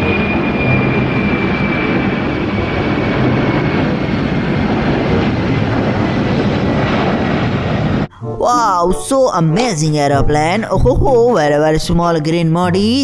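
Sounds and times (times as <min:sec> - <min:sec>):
jet engine rushing and whining: 0:00.0 - 0:08.3.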